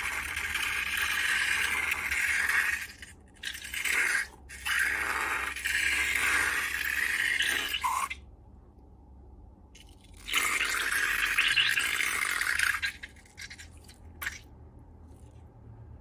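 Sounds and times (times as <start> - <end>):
slime squelching by hand: 9.8 - 15.4.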